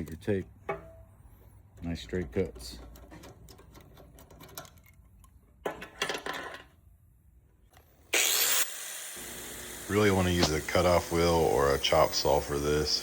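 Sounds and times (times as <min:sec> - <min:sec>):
cutter snipping braided hose: 0:10.0 - 0:11.0.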